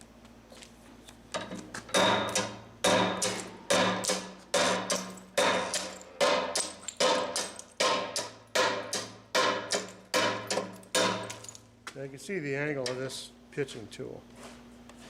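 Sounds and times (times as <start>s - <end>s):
hammer striking steel chisel on stone: 2.0s - 11.4s.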